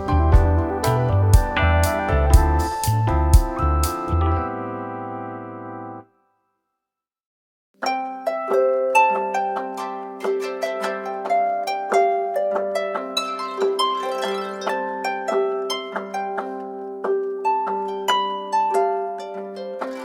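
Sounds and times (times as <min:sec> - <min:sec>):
harp-like ringtone melody: 0:00.0 - 0:06.1, 0:11.5 - 0:16.3.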